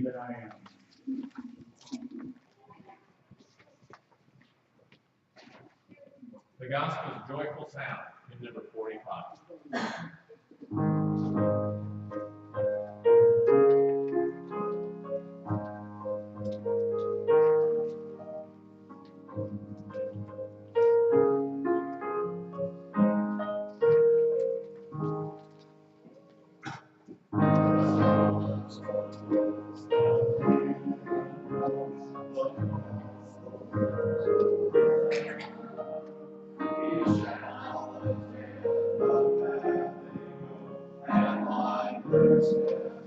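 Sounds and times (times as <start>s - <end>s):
piano playing hymn chords: 10.7s - 43.0s
hymn accompaniment held notes: 36.6s - 43.0s.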